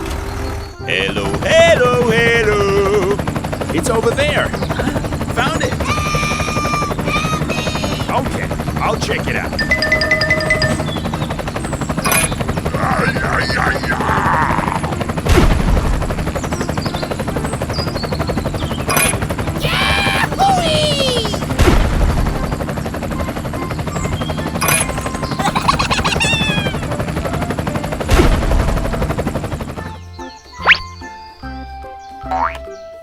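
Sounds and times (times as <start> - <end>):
machine engine rattling: 0.0 - 19.6, 21.3 - 30.1
bouncy music: 0.5 - 3.4, 9.6 - 11.9, 19.6 - 21.6, 22.2 - 33.0
whistling gliding sound effects: 22.2 - 28.0, 30.4 - 31.3.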